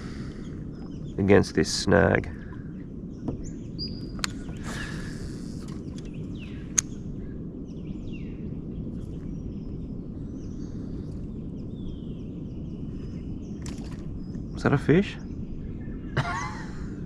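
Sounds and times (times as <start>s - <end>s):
small birds chirping: 0.0s - 17.0s
steady low rumble: 0.0s - 17.0s
sharp click: 4.2s - 4.4s, 6.7s - 6.9s.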